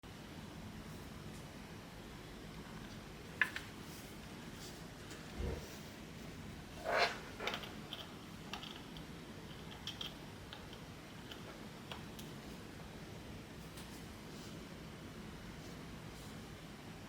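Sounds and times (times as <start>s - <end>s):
mechanical keyboard keystroke clacks: 7.5s - 12.3s.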